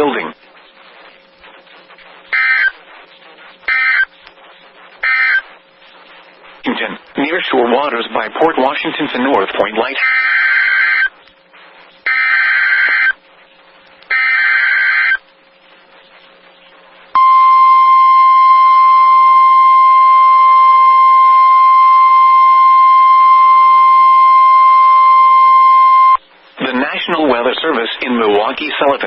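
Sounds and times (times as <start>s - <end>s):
steady warning alarm tone: 2.3s - 3.0s, 3.7s - 4.3s, 5.0s - 5.6s, 10.0s - 11.2s, 12.1s - 13.2s, 14.1s - 15.2s, 17.2s - 26.2s.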